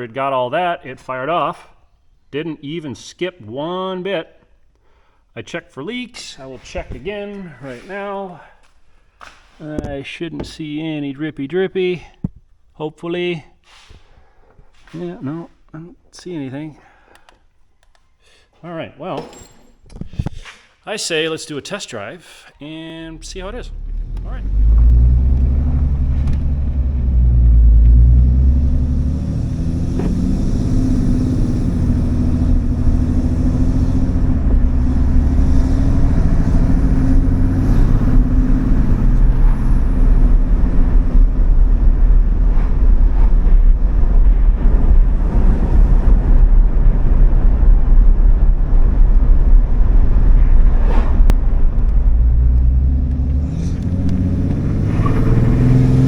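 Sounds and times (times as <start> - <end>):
diesel truck engine rumbling: 22.4 - 56.0.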